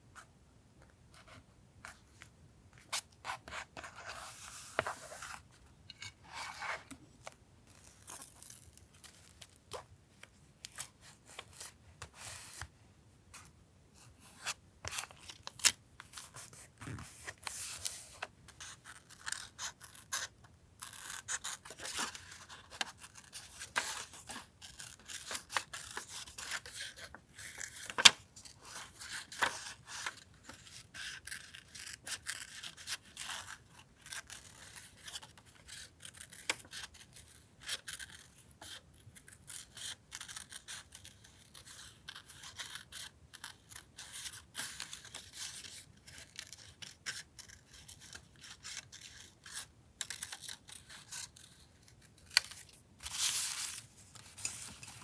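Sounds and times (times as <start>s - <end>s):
paper rustling and scraping: 2.9s - 7.0s, 52.3s - 55.0s.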